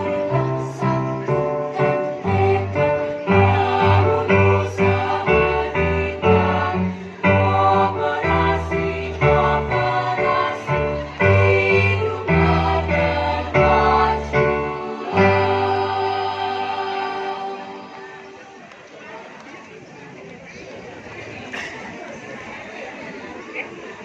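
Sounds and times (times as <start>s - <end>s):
choir singing chords: 0.0s - 18.6s.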